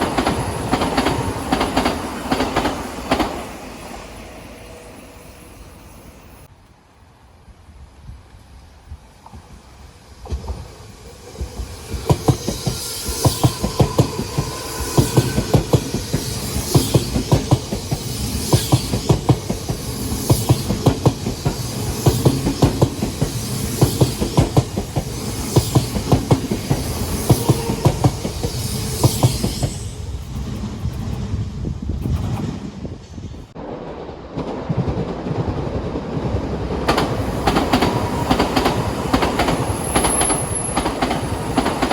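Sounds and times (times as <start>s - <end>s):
train wheels clicking over rail joints: 0.0s - 3.9s, 9.2s - 33.4s, 36.7s - 41.9s
electric train passing: 0.0s - 7.3s, 8.4s - 41.9s.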